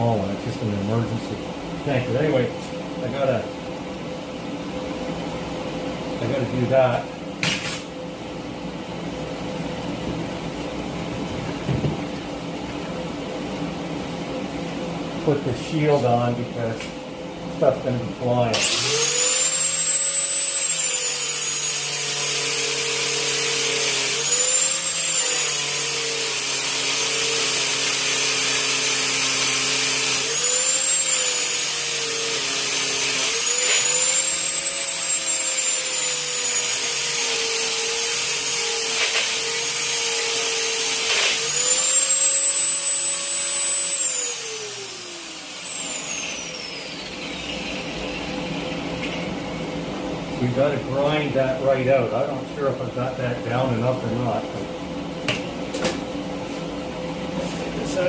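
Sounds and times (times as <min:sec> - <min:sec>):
electric grinder grinding steel: 0:18.6 - 0:49.3.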